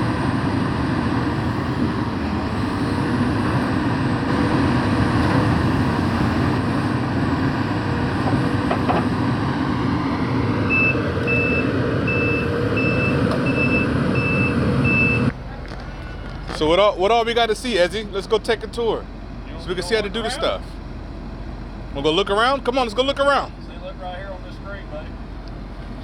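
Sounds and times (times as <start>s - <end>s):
diesel engine running: 0.0s - 26.0s
reversing alarm beeps: 10.7s - 15.3s.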